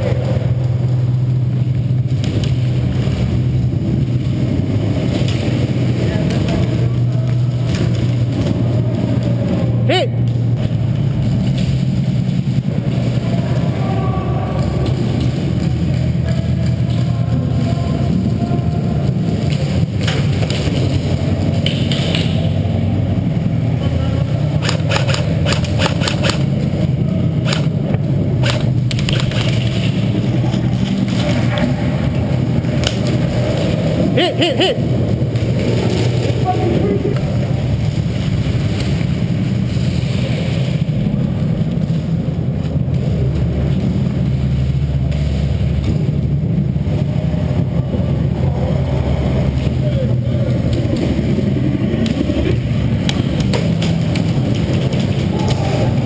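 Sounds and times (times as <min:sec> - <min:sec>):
steady low hum: 0:00.0 - 0:56.0
steady low rumble: 0:00.0 - 0:56.0
sharp clicks and taps: 0:24.6 - 0:26.5, 0:27.4 - 0:29.8.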